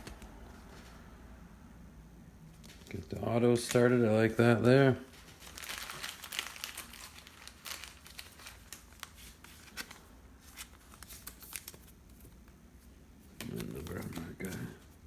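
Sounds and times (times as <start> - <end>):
card wrappers crinkling: 2.6 - 12.6, 13.3 - 15.0.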